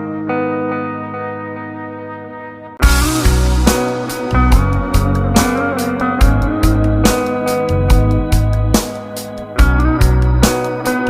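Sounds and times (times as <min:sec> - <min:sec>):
plucked string notes: 0:00.0 - 0:11.0
low bass line: 0:02.8 - 0:08.9, 0:09.6 - 0:10.7
beat with sharp hits: 0:02.8 - 0:11.0.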